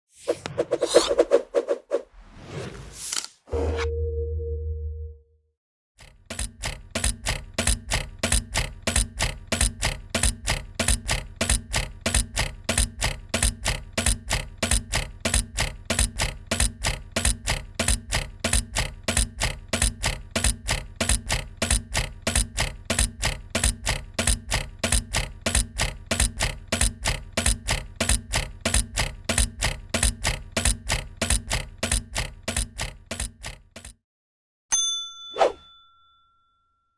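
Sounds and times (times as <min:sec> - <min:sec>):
heavy machinery rhythmic clatter: 0:06.0 - 0:34.0.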